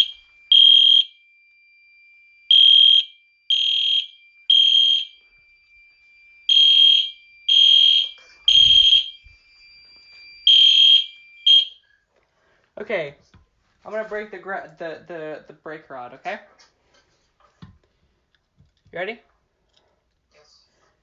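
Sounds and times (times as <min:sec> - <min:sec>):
fire alarm horn blasts: 0:00.0 - 0:09.3, 0:10.0 - 0:11.8.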